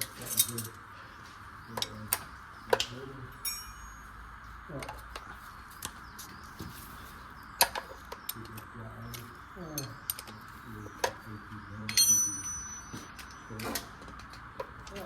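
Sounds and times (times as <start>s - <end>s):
metal tools clinking: 0.0s - 0.8s, 3.4s - 4.2s, 7.7s - 11.2s, 11.8s - 14.3s.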